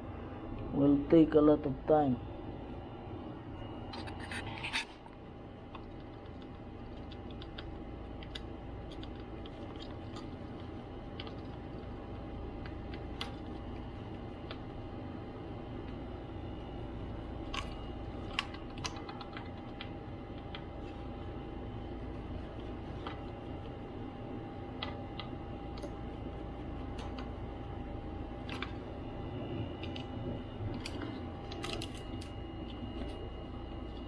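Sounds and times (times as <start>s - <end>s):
steady hum: 0.0s - 34.0s
screwdriver clicks and scrapes: 4.0s - 5.0s.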